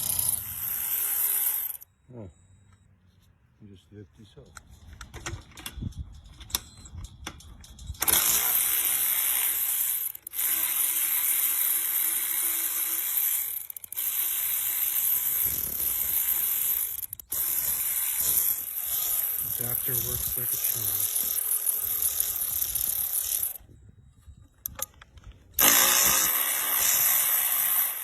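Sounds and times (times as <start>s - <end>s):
electric ratchet wrench whirring: 0.0s - 1.9s, 8.0s - 23.7s, 25.6s - 28.0s.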